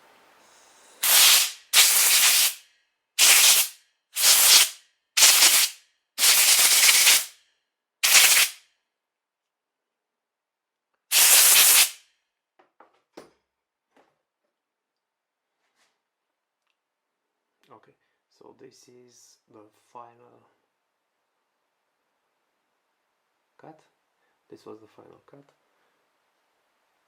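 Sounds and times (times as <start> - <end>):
compressed air blow gun blasts: 1.0 - 2.6, 3.2 - 7.4, 8.0 - 8.6, 11.1 - 12.0.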